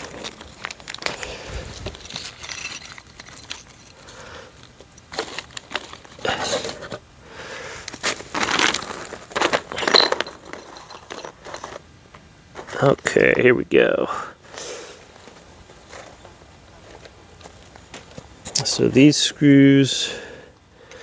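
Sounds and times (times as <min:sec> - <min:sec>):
metal screws clinking: 0:01.9 - 0:04.1, 0:08.5 - 0:11.8.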